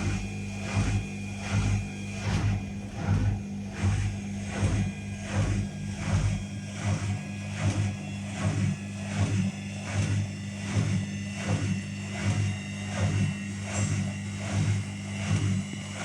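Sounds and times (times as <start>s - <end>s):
washing machine drum swishing: 0.0s - 13.2s
washing machine motor hum: 0.0s - 16.0s.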